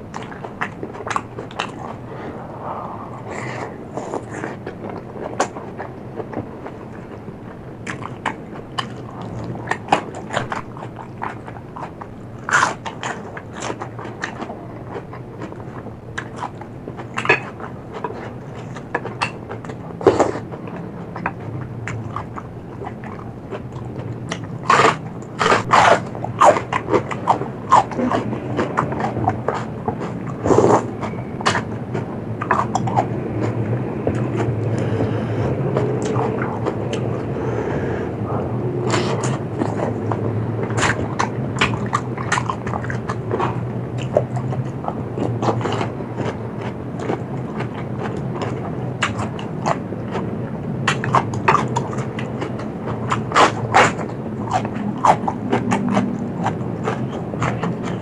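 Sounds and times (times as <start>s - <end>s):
chewing and crunching food: 0.0s - 58.0s
steady low hum: 0.0s - 58.0s
wet mouth clicks: 32.4s - 46.4s, 50.9s - 58.0s.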